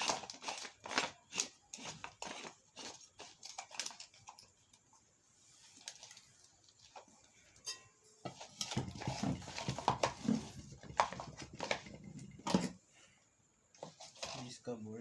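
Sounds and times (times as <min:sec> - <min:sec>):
metal parts knocking and scraping: 0:07.0 - 0:12.8.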